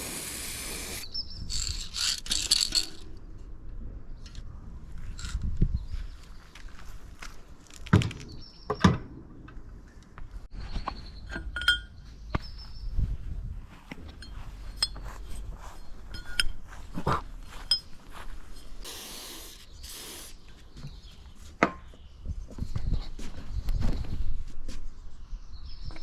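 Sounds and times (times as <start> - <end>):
short hisses: 0.0 - 1.0, 18.8 - 20.4
metal tools clinking and tapping: 11.3 - 12.0, 14.1 - 15.4, 16.1 - 16.7, 17.6 - 18.8.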